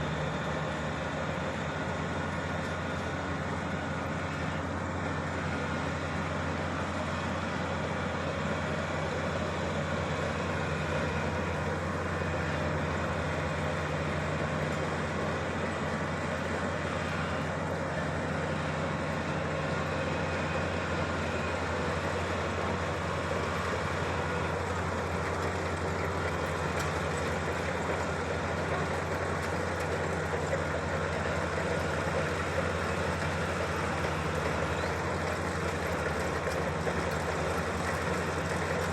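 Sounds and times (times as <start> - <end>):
combine harvester diesel engine drone: 0.0 - 38.9
machinery noise: 8.6 - 38.9.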